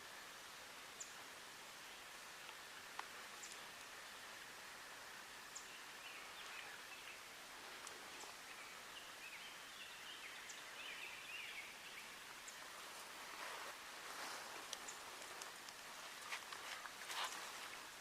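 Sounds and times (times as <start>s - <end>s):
outdoor hiss: 0.0s - 18.0s.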